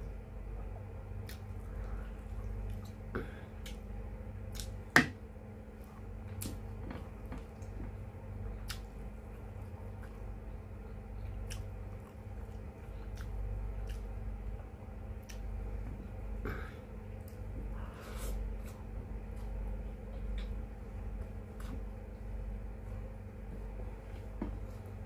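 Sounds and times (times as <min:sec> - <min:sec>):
steady low hum: 0:00.0 - 0:25.0
wet chewing and squishing: 0:05.8 - 0:16.0.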